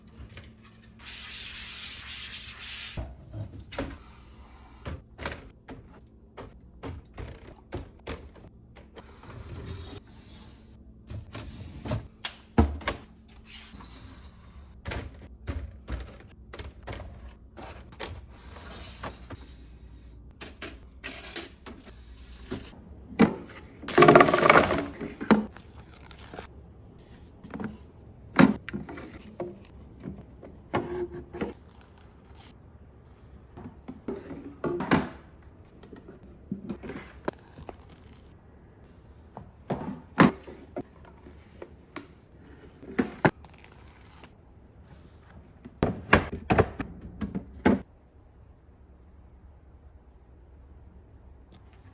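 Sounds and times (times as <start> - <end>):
bottles and containers clattering: 23.9 - 25.5.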